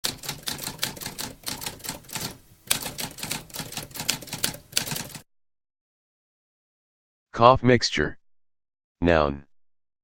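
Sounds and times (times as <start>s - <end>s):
typewriter keys clacking: 0.0s - 5.2s.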